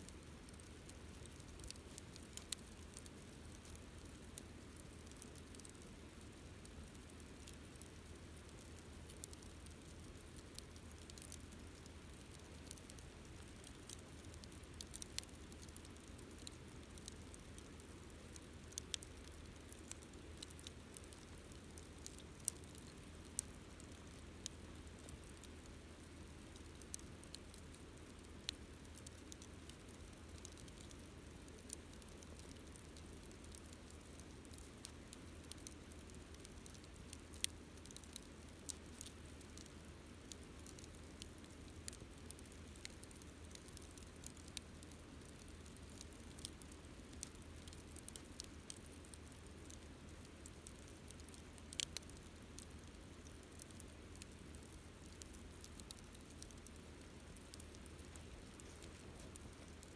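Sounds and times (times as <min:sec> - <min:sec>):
campfire crackling and popping: 0:00.1 - 0:59.9.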